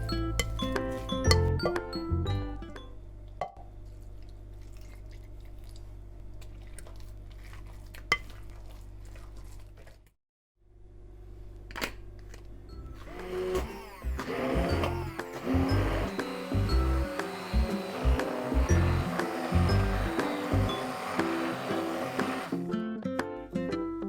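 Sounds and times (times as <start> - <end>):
music: 0.0 - 3.2, 12.6 - 24.0.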